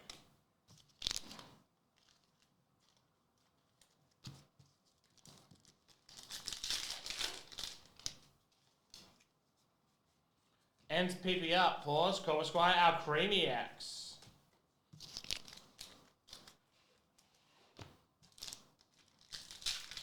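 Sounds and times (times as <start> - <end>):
foil wrapper tearing and crinkling: 5.6 - 8.2, 18.4 - 20.0.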